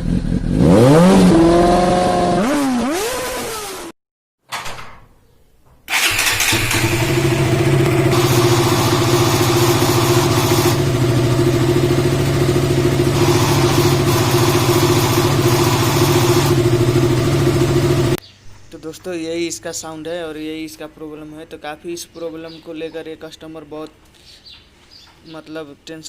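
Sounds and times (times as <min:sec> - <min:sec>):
motorcycle engine starting and running: 0:00.0 - 0:03.9, 0:05.9 - 0:18.2
abnormal engine noise: 0:05.9 - 0:18.2.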